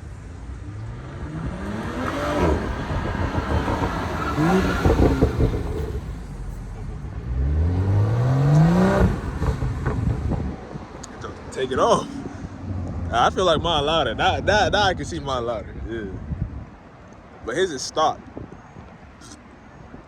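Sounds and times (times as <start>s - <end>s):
car engine accelerating hard: 0.0s - 15.0s.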